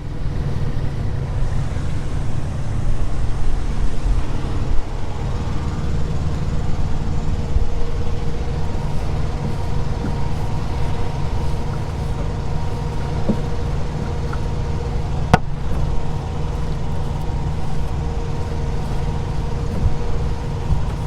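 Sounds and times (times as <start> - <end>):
diesel engine idling: 0.0 - 21.0
faint hum tones: 0.0 - 21.0.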